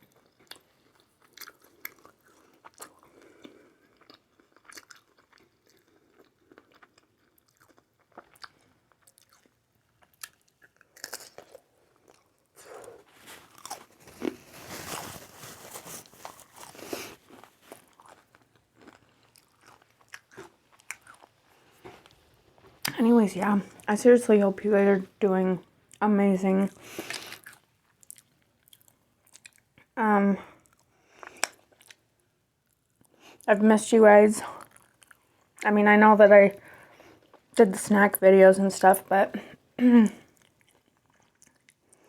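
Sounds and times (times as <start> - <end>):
person chewing: 0.0 - 23.0, 26.8 - 29.9, 30.5 - 32.1, 34.4 - 35.6, 40.3 - 42.0.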